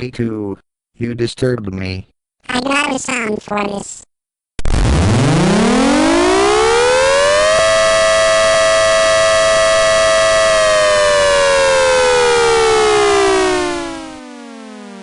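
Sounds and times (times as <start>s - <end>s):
mechanical warning siren: 4.7s - 15.0s.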